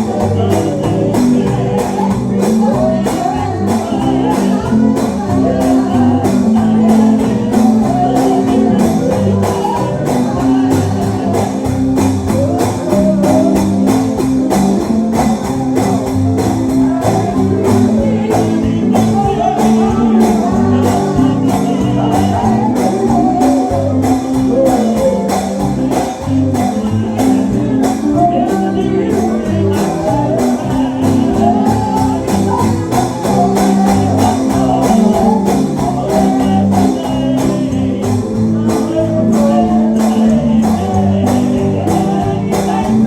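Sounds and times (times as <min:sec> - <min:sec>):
bass: 0:00.0 - 0:43.0
guitar: 0:00.0 - 0:43.0
people singing gospel: 0:00.0 - 0:43.0.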